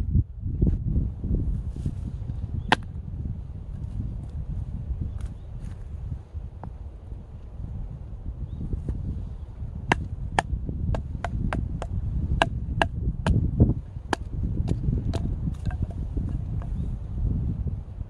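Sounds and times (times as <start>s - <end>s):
blade chopping firewood: 2.7s - 2.9s, 9.8s - 16.8s.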